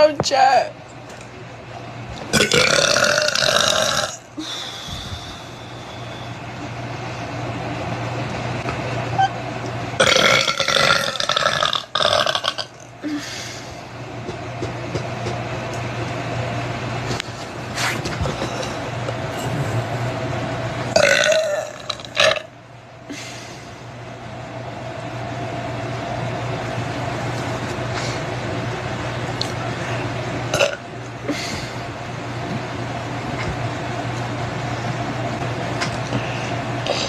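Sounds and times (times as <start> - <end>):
low hum: 0.0 - 37.0
person burping: 2.3 - 4.3, 10.0 - 12.8, 21.0 - 22.5, 30.5 - 30.8.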